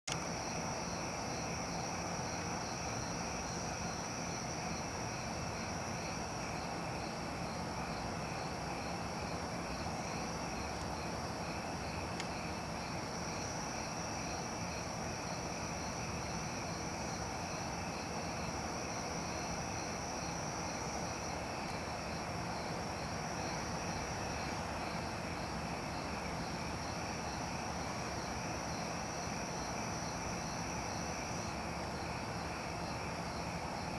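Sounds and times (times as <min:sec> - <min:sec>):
crickets trilling: 0:00.1 - 0:33.9.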